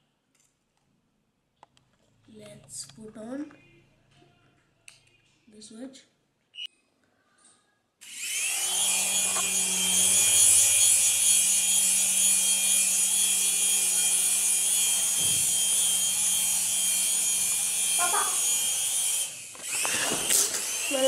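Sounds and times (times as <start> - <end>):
rotor whir: 8.0 - 21.0
toy helicopter motor whine: 8.0 - 21.0.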